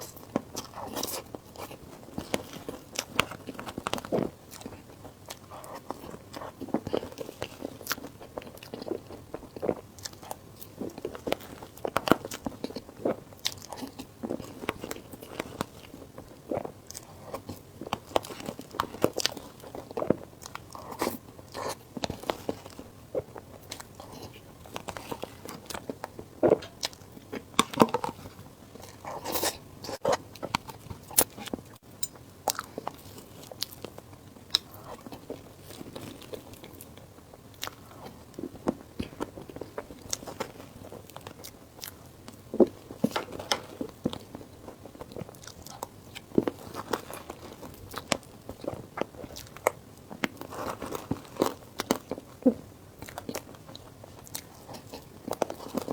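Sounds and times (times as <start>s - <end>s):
person biting and chewing: 23.7s - 31.6s.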